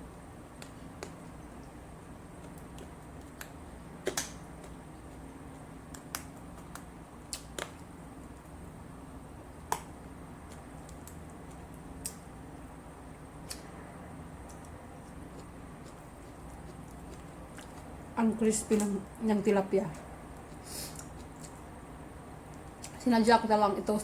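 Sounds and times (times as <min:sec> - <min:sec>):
steady low hum: 0:00.0 - 0:24.0
crunchy eating clicks: 0:00.5 - 0:08.6, 0:09.7 - 0:12.3, 0:14.4 - 0:17.9.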